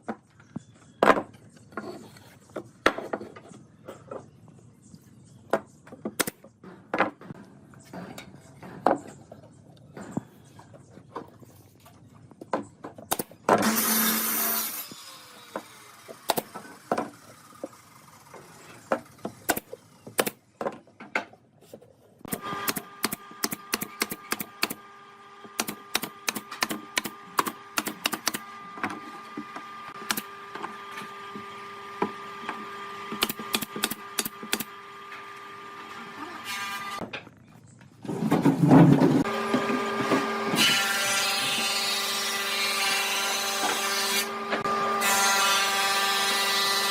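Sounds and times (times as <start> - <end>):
small electric tool motor: 13.6 - 19.2, 22.3 - 37.0.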